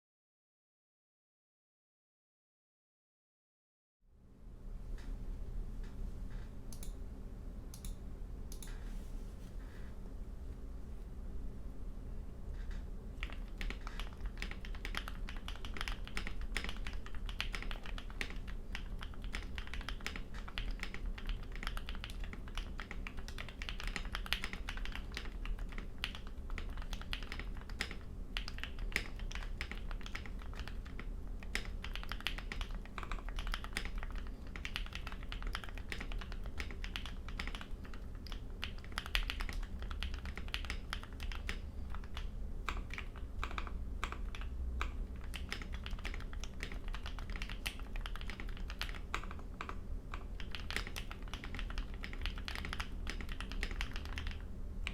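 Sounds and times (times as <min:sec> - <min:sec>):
fast typing on mechanical keyboard: 0:13.2 - 0:54.9.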